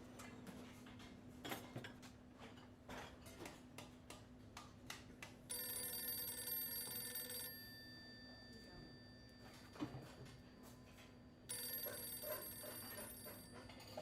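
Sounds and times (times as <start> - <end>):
phone ringing electronic ringtone: 5.5 - 14.0.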